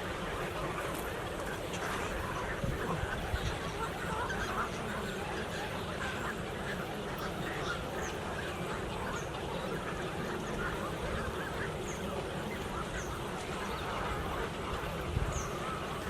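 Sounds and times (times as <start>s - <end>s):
water birds quacking and squawking: 0.0s - 16.0s.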